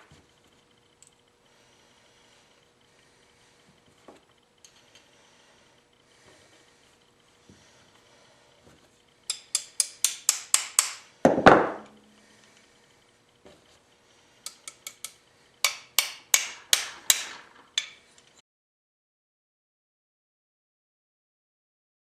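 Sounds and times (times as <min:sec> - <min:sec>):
hammer tapping steel: 0:09.3 - 0:12.1, 0:14.5 - 0:18.0.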